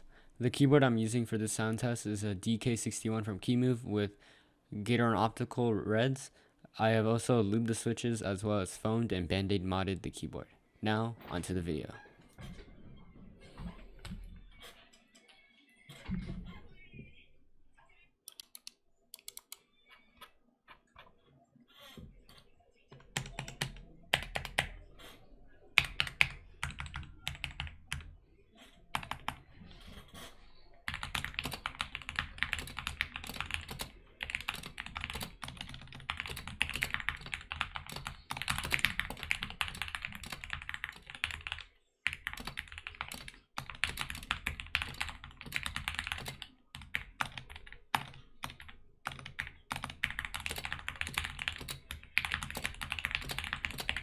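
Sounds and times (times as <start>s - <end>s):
mechanical keyboard typing: 25.8s - 28.1s, 30.9s - 54.0s.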